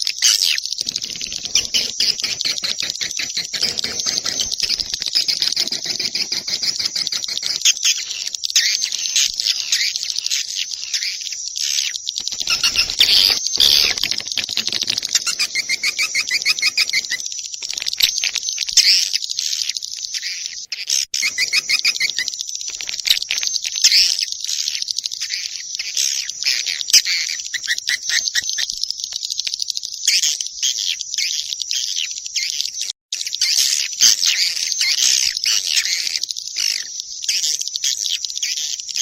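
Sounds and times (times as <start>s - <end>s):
rapid ticking trills: 0.7s - 11.0s, 11.6s - 20.1s
swiftlets twittering: 0.8s - 11.0s, 12.0s - 18.8s.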